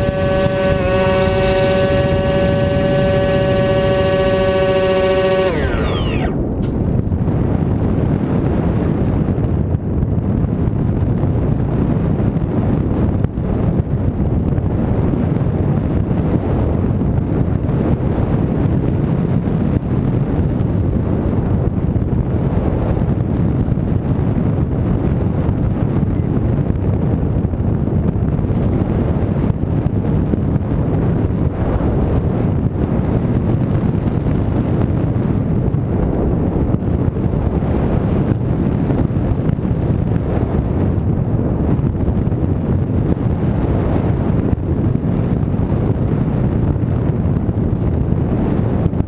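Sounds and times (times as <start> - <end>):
falling whine: 0.0 - 6.5
wind rushing over microphone: 0.0 - 49.0.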